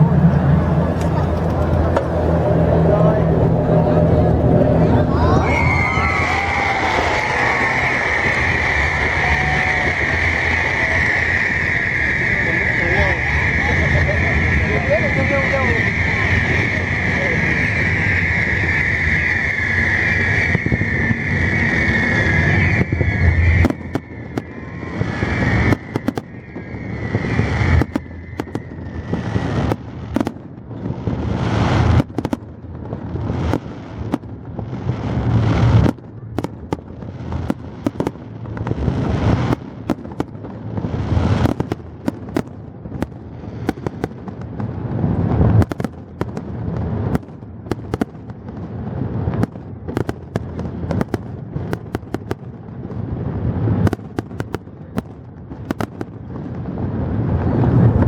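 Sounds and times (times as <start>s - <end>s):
steady high tone: 0.0s - 25.6s
fireworks bangs with crackle: 0.0s - 58.0s.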